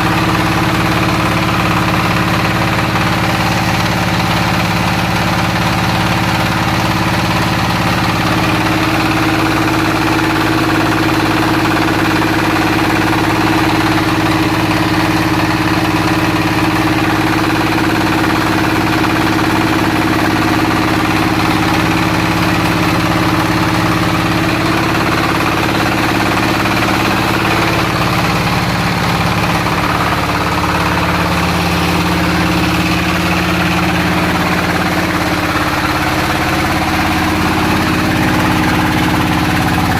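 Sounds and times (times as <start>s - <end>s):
machine humming: 12.7s - 39.9s.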